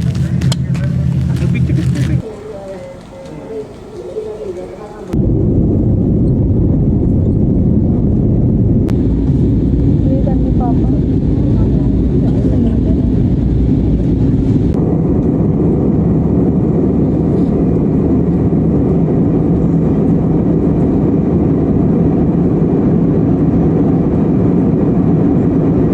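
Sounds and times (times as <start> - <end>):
vehicle rumble from inside: 0.0 - 2.3, 5.1 - 15.4.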